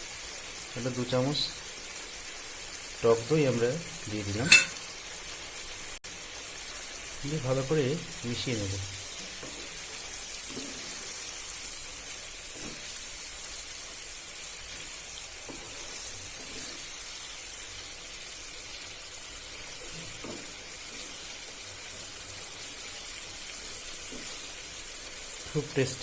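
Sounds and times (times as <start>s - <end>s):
curry sizzling in a pan: 0.0s - 26.0s
spatula knocks: 4.4s - 4.8s.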